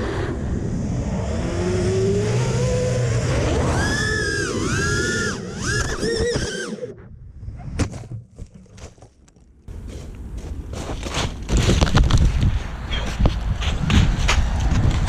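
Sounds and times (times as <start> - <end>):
drone motors whining: 0.0 - 7.6
low rumbling noise: 0.0 - 8.4.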